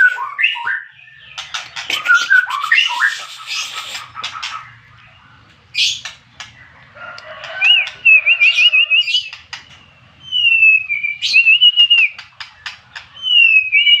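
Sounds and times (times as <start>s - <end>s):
songbird whistling and trilling: 0.0s - 4.4s, 7.6s - 14.0s
bird clicking and chattering: 1.3s - 4.7s, 12.0s - 13.2s.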